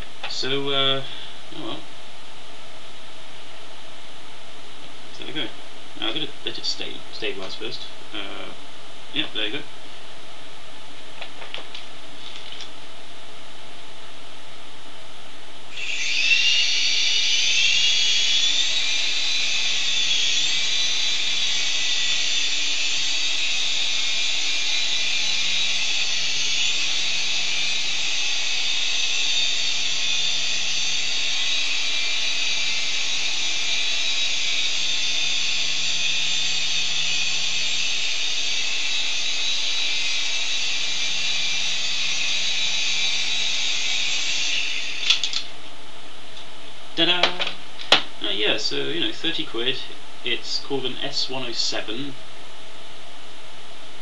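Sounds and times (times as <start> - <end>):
toy helicopter motor whine: 15.7 - 45.5.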